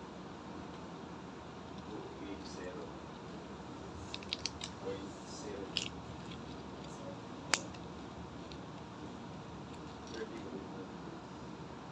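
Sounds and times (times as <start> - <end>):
steady hiss: 0.0 - 11.9
small sharp clicks and crinkles: 4.0 - 10.5.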